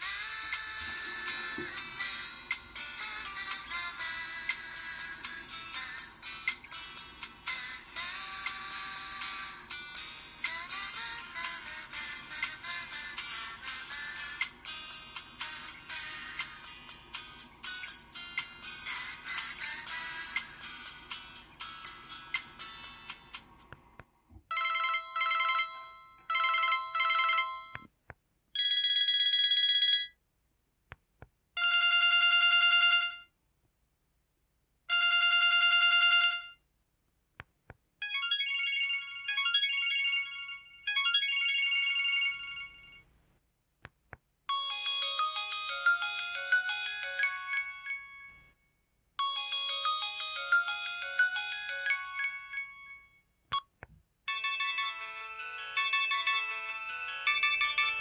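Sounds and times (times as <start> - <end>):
electronic phone ringtones: 24.5 - 27.9, 28.6 - 30.2, 31.6 - 33.3, 34.9 - 36.6, 38.0 - 43.1, 44.5 - 48.6, 49.2 - 53.7, 54.3 - 58.0.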